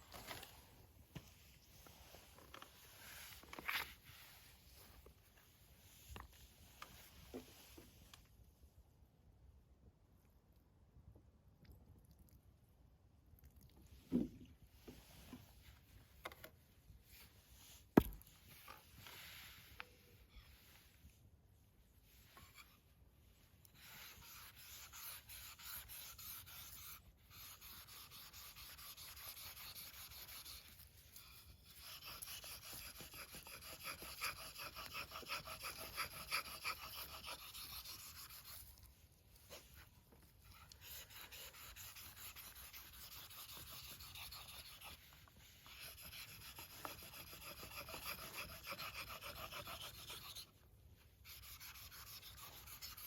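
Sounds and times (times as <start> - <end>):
blade rasping on whetstone: 23.8 - 38.8, 40.5 - 50.5, 51.3 - 53.0.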